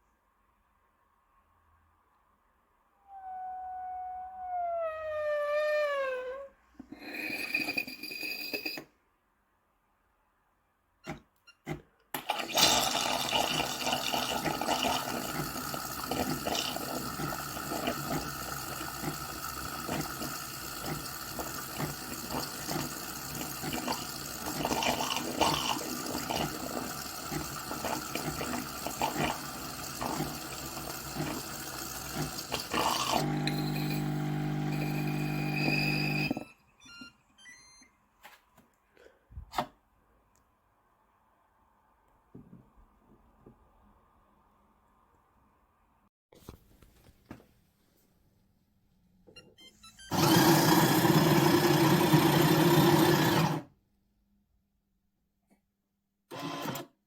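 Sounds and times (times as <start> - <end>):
espresso machine gurgling and spitting: 12.2 - 36.4, 50.1 - 53.6
pump hum: 12.2 - 36.5.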